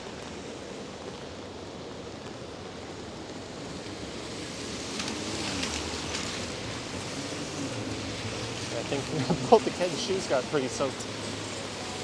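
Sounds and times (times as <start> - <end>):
pouring rain: 2.4 - 12.0
tyres spraying on wet road: 2.6 - 12.0.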